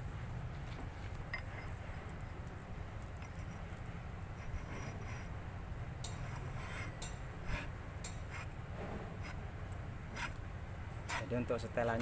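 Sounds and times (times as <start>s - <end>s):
steady low hum: 0.0s - 12.0s
light metal clinks and taps: 1.1s - 3.9s, 6.0s - 6.2s, 7.0s - 7.3s, 8.0s - 8.3s.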